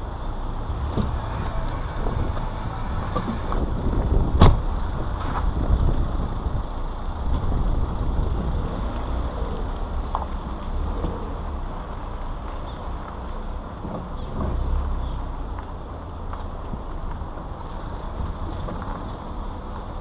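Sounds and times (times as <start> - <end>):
moving car rumble: 0.0 - 20.0
wind: 0.0 - 20.0.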